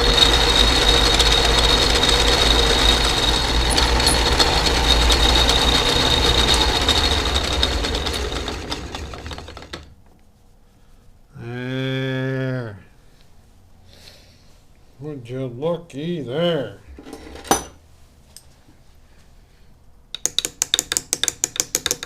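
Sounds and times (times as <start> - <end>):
lathe running with high tone: 0.0 - 9.8
lathe winding down: 0.0 - 9.9.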